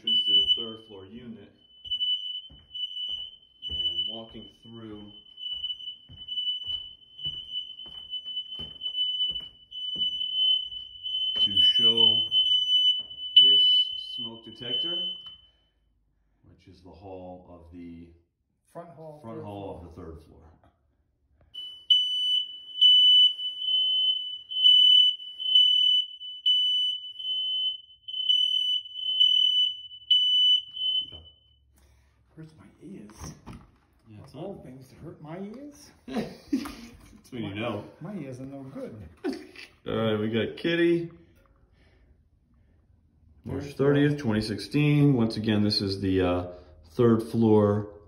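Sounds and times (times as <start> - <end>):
smoke alarms high-pitched tone: 0.0 - 16.1, 21.5 - 31.8, 34.8 - 38.0
footsteps on floor: 1.8 - 13.2.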